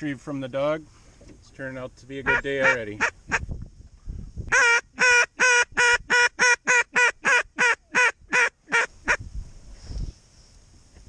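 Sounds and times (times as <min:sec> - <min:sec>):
loud nasal duck quacks: 0:02.2 - 0:03.5, 0:04.5 - 0:09.2.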